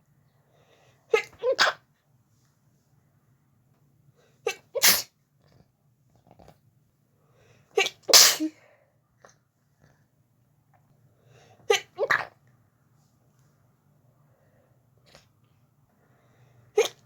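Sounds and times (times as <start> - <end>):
woman sneezing: 4.5 - 5.1, 7.8 - 8.6.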